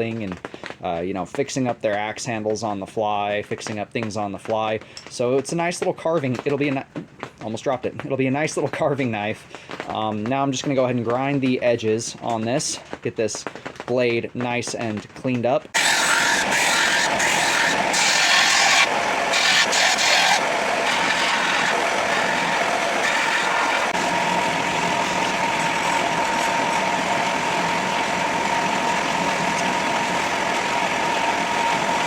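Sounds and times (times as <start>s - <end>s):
steel hissing against grinder: 15.8s - 27.3s
power grinder whine: 15.8s - 32.0s.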